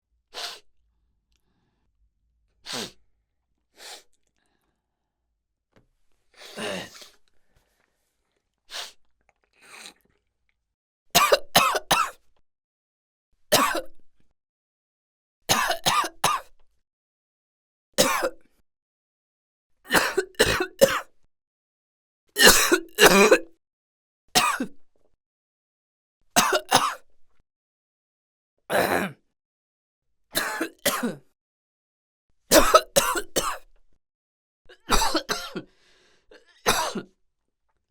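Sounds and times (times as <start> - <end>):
person coughing: 11.2 - 12.1, 18.0 - 18.3, 19.9 - 21.1, 22.4 - 23.5, 24.4 - 24.7, 26.4 - 27.0, 30.4 - 31.3, 32.5 - 33.6, 34.7 - 35.7, 36.3 - 37.1
faint breathy sounds: 35.7 - 36.6.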